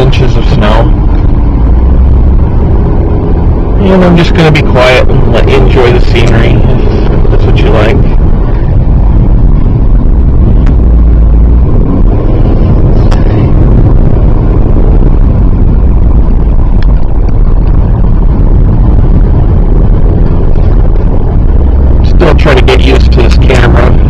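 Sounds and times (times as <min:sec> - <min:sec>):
car cabin road and engine rumble: 0:00.0 - 0:24.0.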